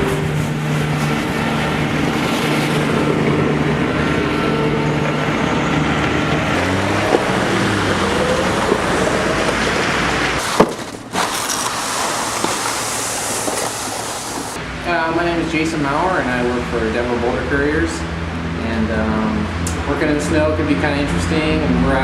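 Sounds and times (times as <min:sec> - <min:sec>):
vehicle engines running: 0:00.0 - 0:10.4
tyre and road noise: 0:00.0 - 0:18.6.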